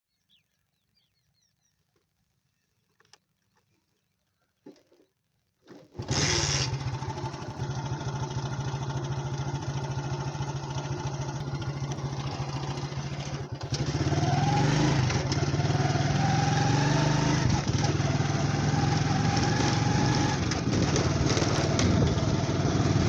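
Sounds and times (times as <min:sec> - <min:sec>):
motorcycle engine running and revving: 0:06.0 - 0:23.0.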